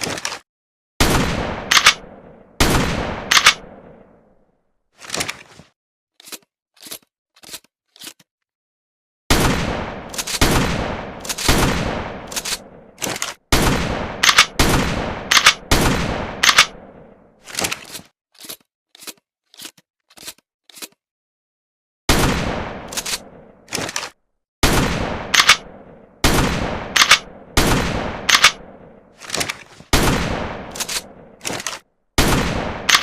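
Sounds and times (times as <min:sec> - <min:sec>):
shotgun blasts with echo: 0:01.0 - 0:04.2, 0:09.3 - 0:17.2, 0:22.1 - 0:24.0, 0:24.6 - 0:29.0, 0:29.9 - 0:33.0.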